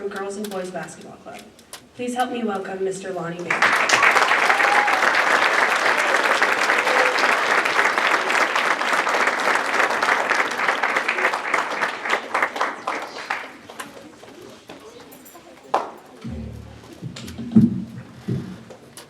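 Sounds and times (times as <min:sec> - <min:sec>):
crowd applauding: 0:03.5 - 0:14.1.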